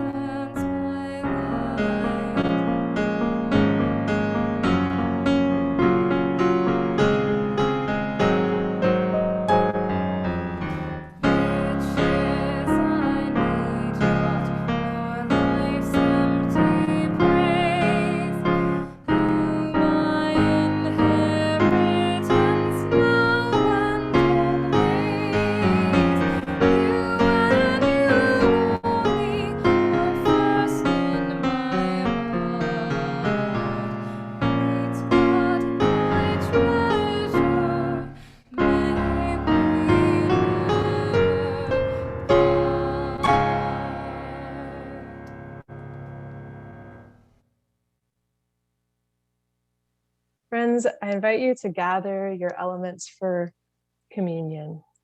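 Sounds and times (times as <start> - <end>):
piano music: 0.0 - 47.2.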